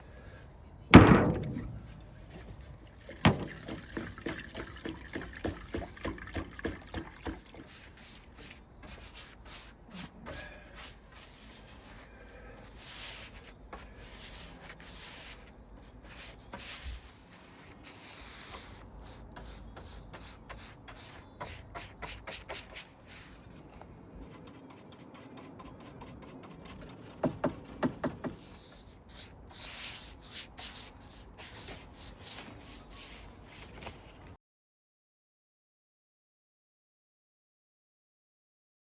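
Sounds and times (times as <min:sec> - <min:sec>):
sharp knock: 0:00.9 - 0:02.5
brush swishing on wood: 0:28.4 - 0:34.2.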